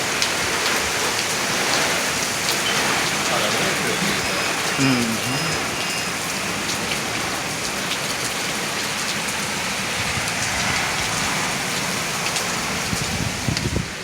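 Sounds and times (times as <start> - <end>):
heavy rain pouring: 0.0 - 14.0
raindrops ticking on surfaces: 0.0 - 14.0
gusty wind: 10.0 - 14.0.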